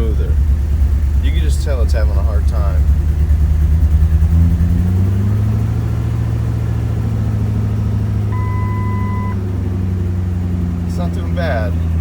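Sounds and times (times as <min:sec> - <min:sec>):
engine idling unevenly: 0:00.0 - 0:12.0
short electronic beep: 0:08.3 - 0:09.4.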